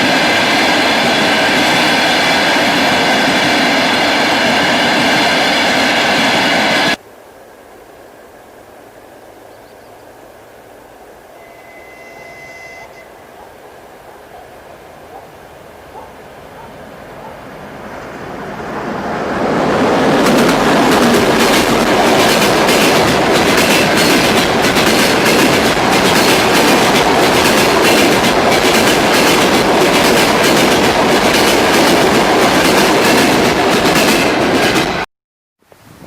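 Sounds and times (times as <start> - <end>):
train coaches rushing past: 0.0 - 7.0, 15.7 - 35.1.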